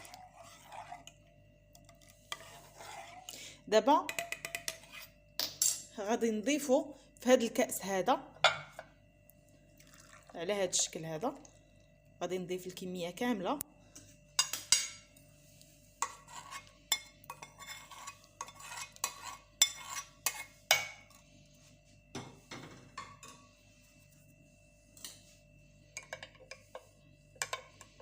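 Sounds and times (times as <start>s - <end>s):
milk pouring into glass: 9.8s - 10.4s.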